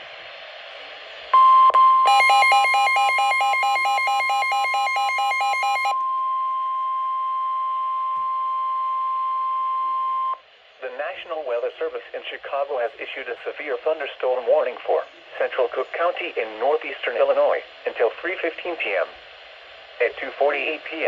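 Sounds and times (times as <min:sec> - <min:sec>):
rapidly pulsing beep: 0:01.4 - 0:08.1
high alarm tone: 0:01.4 - 0:10.4.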